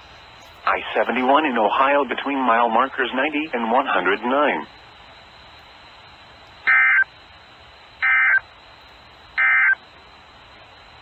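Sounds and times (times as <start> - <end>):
radio hiss: 0.0 - 11.0
harsh digital data bursts: 6.7 - 7.1, 8.0 - 8.4, 9.4 - 9.8.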